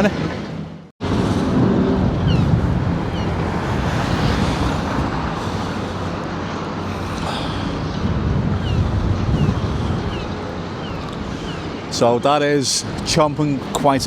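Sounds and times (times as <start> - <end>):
wind buffeting microphone: 0.0 - 14.0
excavator rumble: 1.0 - 12.0.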